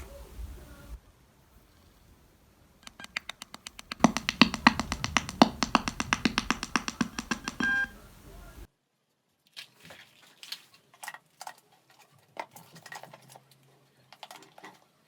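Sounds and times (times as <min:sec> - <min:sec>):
music with fast electronic drum beat: 0:03.0 - 0:07.9.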